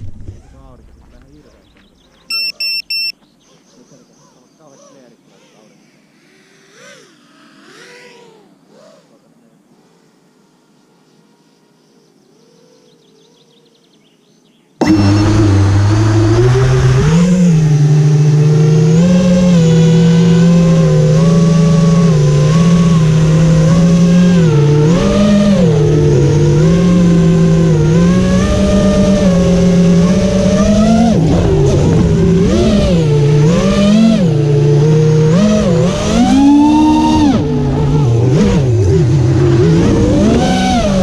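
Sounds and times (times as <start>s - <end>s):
quadcopter motors whining: 4.6s - 9.2s, 14.8s - 41.0s.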